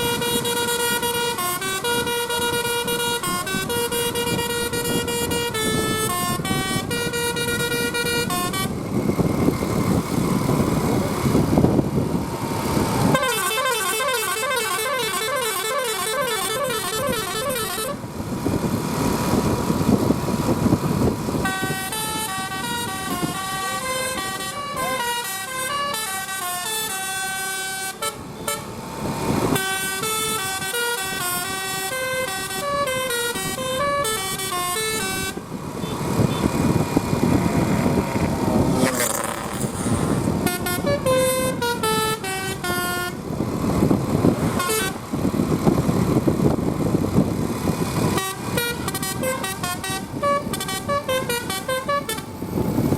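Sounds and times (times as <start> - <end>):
musical bus horn melodies: 0.0 - 8.9, 13.0 - 18.1, 21.4 - 28.8, 29.5 - 36.5, 38.7 - 43.4, 44.4 - 45.1, 48.1 - 52.6
rushing road noise: 0.0 - 52.9.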